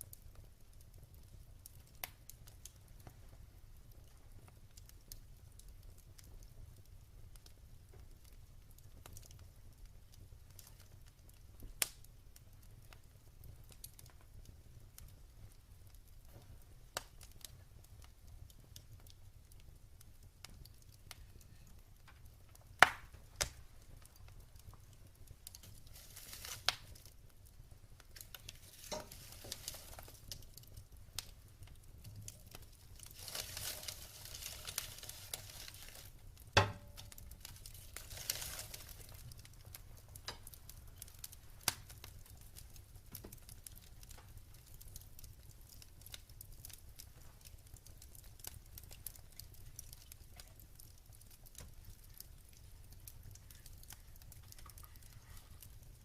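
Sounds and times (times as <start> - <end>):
wood fire crackling: 0.0 - 56.0
fire hissing: 22.6 - 43.0
loud sharp pops: 22.8 - 23.6.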